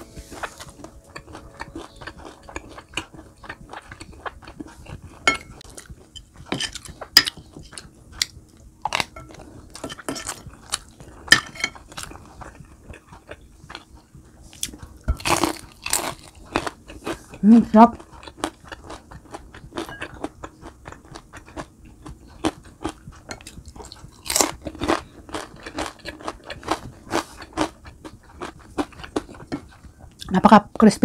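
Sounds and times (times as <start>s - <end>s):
crunchy chewing of fried food: 0.0s - 30.3s
utensils clinking on a plate: 5.2s - 7.9s, 8.9s - 10.5s, 11.3s - 12.1s.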